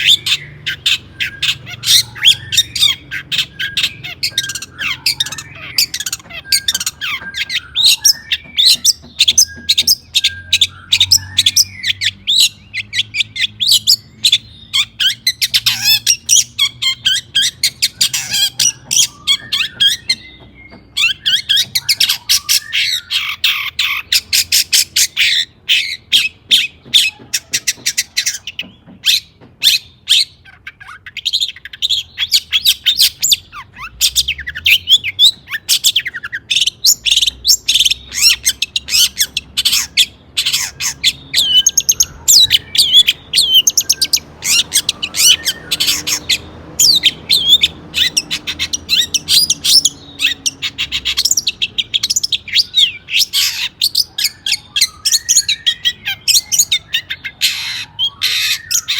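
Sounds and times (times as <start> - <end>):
shrike singing chirps and trills: 0.0 - 58.9.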